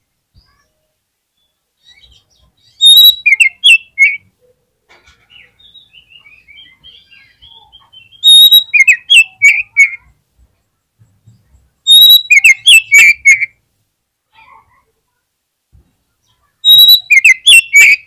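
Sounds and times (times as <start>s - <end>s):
magpie-robin singing: 1.4s - 4.3s, 5.2s - 10.1s, 11.3s - 13.6s, 16.2s - 18.0s
soft bird twittering: 1.4s - 4.3s, 5.2s - 10.1s, 11.3s - 13.6s, 16.2s - 18.0s.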